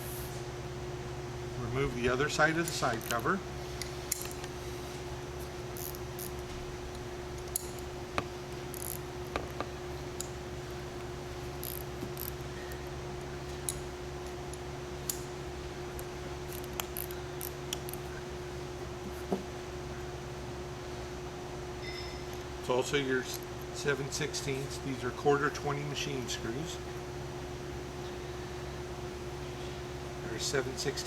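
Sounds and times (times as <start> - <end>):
steady low hum: 0.0 - 31.0
wrench clicking on metal: 8.7 - 9.0.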